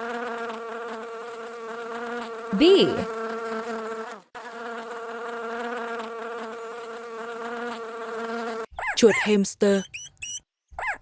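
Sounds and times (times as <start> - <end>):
bee buzzing: 0.0 - 8.7.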